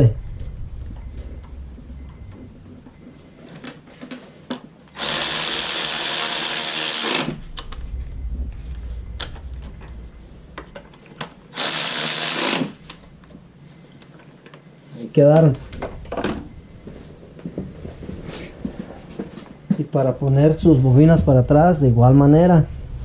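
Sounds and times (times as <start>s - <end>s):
electric ratchet motor whining: 5.0s - 7.6s, 11.5s - 13.0s.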